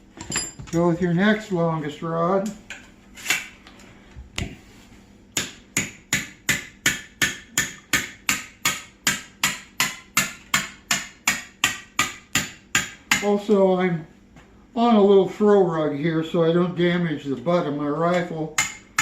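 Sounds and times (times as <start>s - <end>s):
hammer tapping metal rod: 18.1s - 19.0s.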